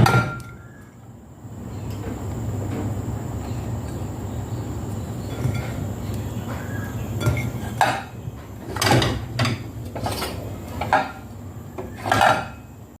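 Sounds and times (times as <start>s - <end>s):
utensils knocking and scraping dishes: 5.3s - 11.2s, 11.8s - 12.6s.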